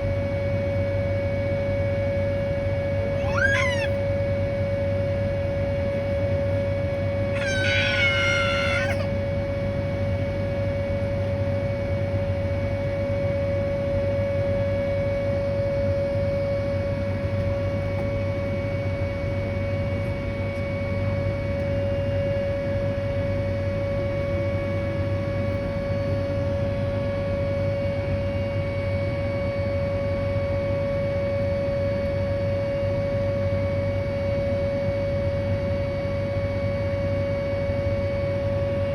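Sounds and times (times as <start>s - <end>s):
high wavering cry: 3.2s - 4.0s, 7.4s - 9.1s.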